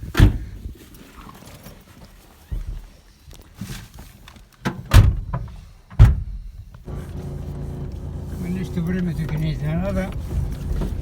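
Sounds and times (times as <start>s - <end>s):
car doors shutting: 4.7s - 11.0s.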